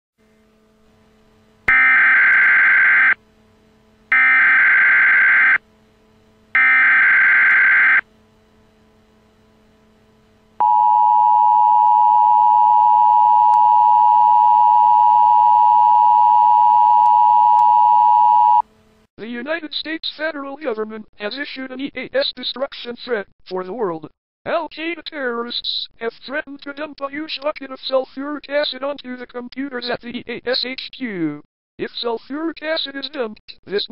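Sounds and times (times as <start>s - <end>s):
steady two-tone alert signal: 1.7s - 3.2s, 4.1s - 5.6s, 6.5s - 8.1s, 10.6s - 18.6s
data burst tones: 6.6s - 8.0s.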